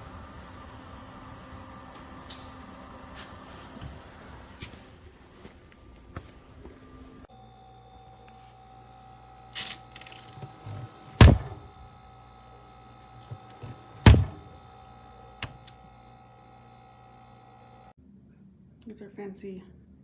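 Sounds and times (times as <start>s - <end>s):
fridge electrical hum: 0.0s - 17.9s
fridge humming: 9.5s - 16.0s
loud thumps: 10.6s - 11.8s, 13.3s - 14.6s
soft knocks: 11.2s - 11.7s, 13.6s - 14.6s.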